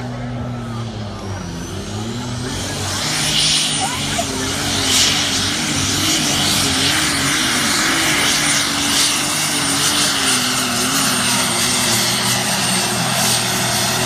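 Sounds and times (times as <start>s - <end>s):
tractor engine running loud: 0.0s - 14.0s.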